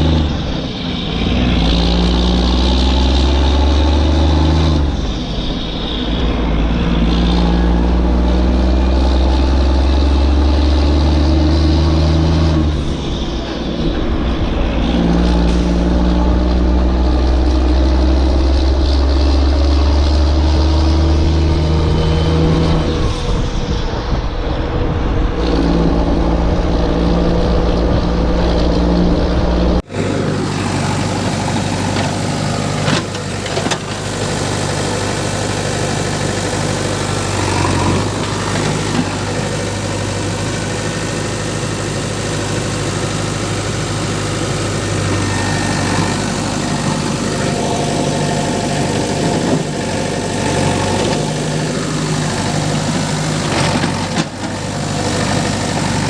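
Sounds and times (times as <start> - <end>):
engine revving up and down: 0.0 - 56.0
engine idling: 27.5 - 56.0.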